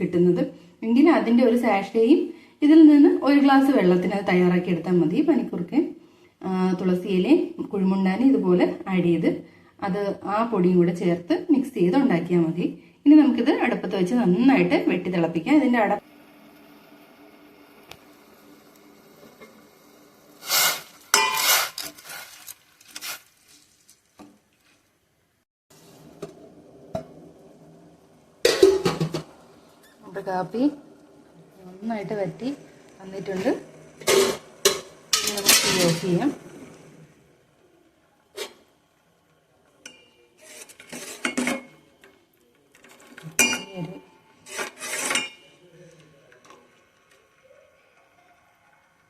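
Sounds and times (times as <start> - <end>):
metal pot scraping: 20.4 - 24.1, 28.4 - 37.2, 38.3 - 38.7, 39.8 - 41.9, 42.7 - 45.6
metal scraping and rattling: 31.8 - 36.9
utensils clinking: 34.0 - 36.2, 39.8 - 45.5.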